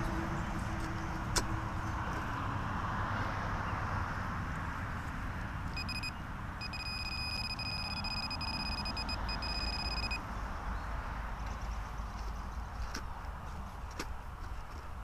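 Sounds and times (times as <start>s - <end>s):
metal detector electronic tone: 5.8s - 10.2s.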